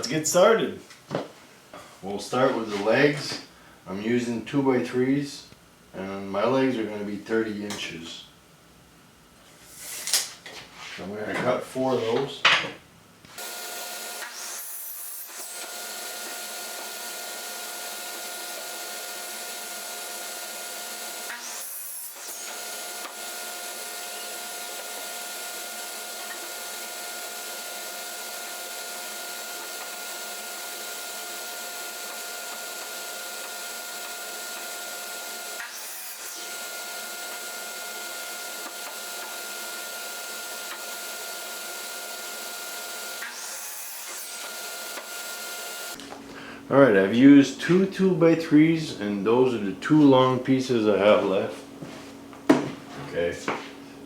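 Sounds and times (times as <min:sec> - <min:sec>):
electric motor whining: 0:13.4 - 0:46.0.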